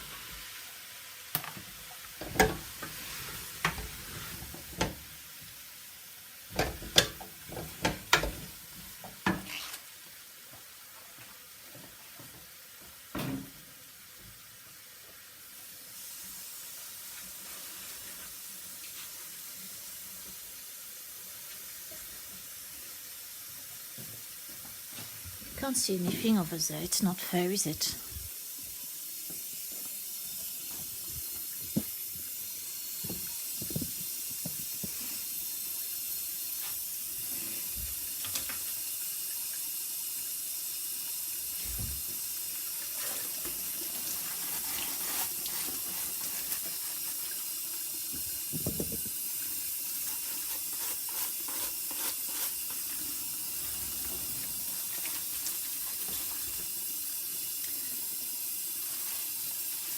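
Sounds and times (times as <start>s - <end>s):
tap running into sink: 2.2s - 3.0s, 3.6s - 5.0s, 6.5s - 9.6s, 29.3s - 32.3s, 33.0s - 35.0s, 48.0s - 49.4s.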